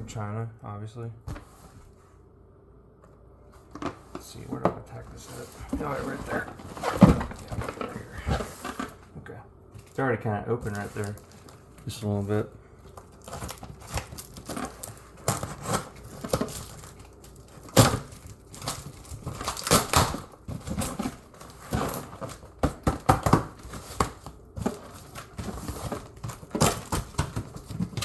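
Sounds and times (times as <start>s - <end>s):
package being ripped open: 17.6s - 20.3s.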